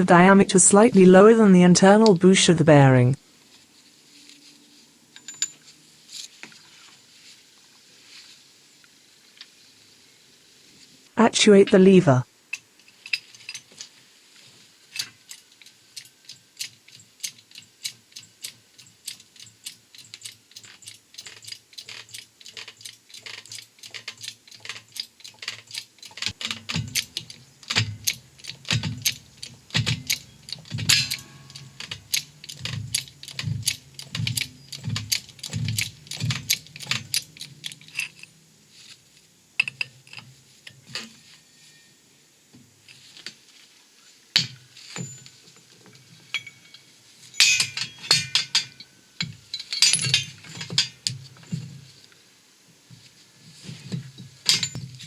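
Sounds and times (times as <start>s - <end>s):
hydraulic press lever clicking: 23.2s - 37.8s.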